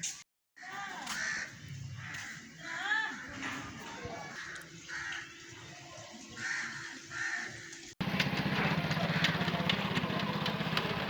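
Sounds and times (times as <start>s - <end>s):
crows cawing: 0.6s - 3.6s, 4.2s - 5.5s, 6.4s - 7.9s, 8.9s - 9.7s
engine running with pulsing hum: 8.0s - 11.0s.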